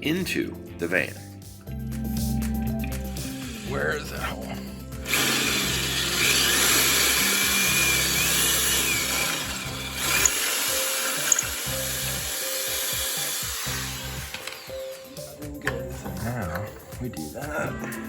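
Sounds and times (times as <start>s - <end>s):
background music: 0.0s - 18.0s
power tool running: 2.9s - 15.7s.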